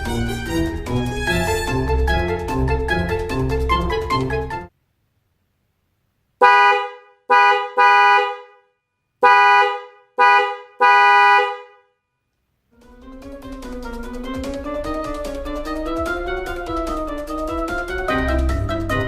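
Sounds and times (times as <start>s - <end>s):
background music: 0.0s - 4.7s, 12.8s - 19.0s
electric car horn honking: 6.4s - 11.9s.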